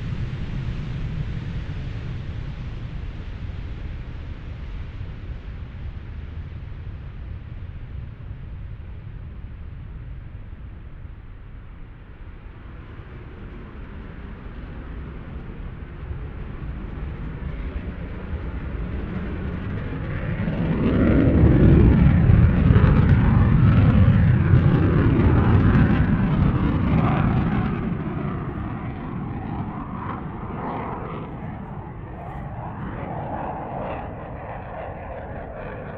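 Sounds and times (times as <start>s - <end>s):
jet aircraft passing by: 11.4s - 35.9s.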